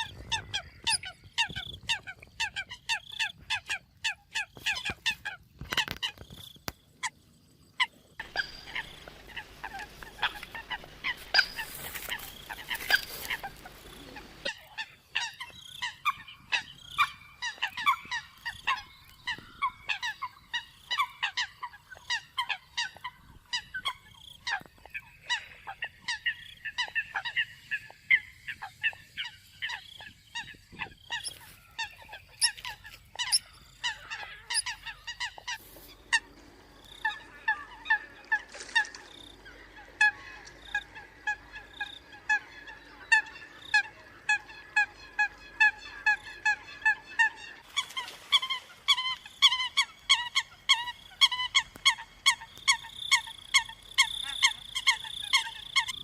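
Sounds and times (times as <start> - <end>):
coots honking calls: 7.8 - 56.0.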